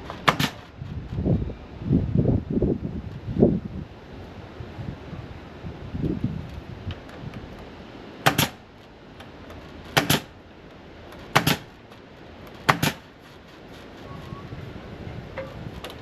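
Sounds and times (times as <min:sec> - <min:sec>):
nail gun firing: 0:00.0 - 0:00.7, 0:08.2 - 0:08.6, 0:09.9 - 0:10.4, 0:11.2 - 0:11.8, 0:12.6 - 0:13.1.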